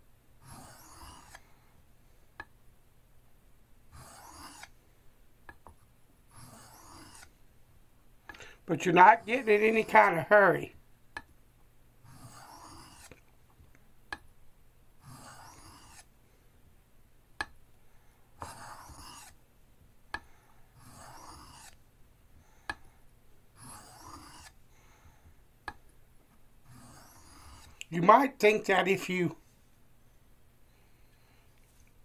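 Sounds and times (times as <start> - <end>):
knife rasping on a stone: 0.4 - 1.4, 3.9 - 4.7, 6.3 - 7.3, 12.0 - 13.2, 15.0 - 16.1, 18.4 - 19.4, 20.8 - 21.8, 23.6 - 24.6, 26.7 - 27.8.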